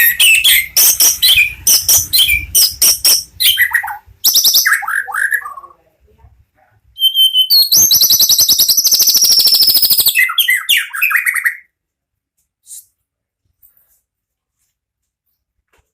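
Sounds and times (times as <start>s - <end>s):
bird singing whistles and trills: 0.0s - 5.6s, 7.0s - 11.7s.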